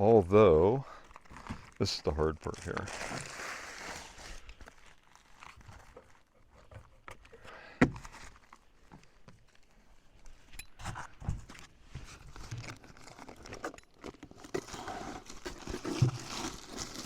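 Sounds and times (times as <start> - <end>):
roofing paper unrolling: 0.2 - 7.0, 11.5 - 17.0
rustling: 0.9 - 7.2.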